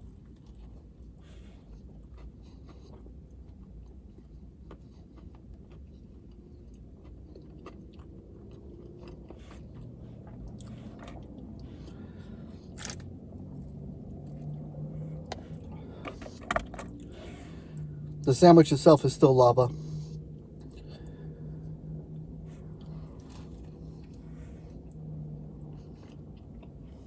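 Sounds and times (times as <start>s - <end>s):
person crunching crispy food: 7.0s - 9.9s, 12.8s - 13.1s.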